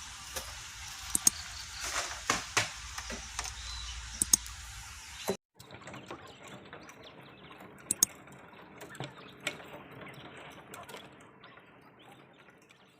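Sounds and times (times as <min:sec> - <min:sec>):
beaks pecking at feed: 0:01.0 - 0:02.1.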